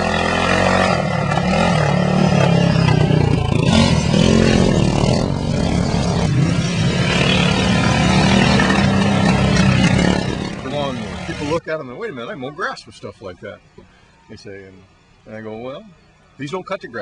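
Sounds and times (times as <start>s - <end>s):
racing lawnmower engines: 0.0s - 17.0s.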